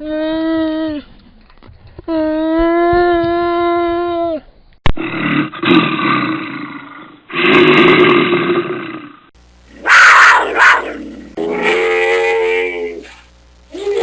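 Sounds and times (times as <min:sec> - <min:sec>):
wild animal roars: 0:05.0 - 0:13.0.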